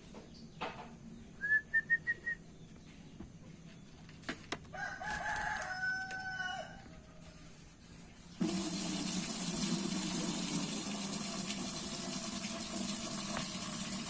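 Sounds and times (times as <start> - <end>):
rooster crowing: 4.7 - 7.8.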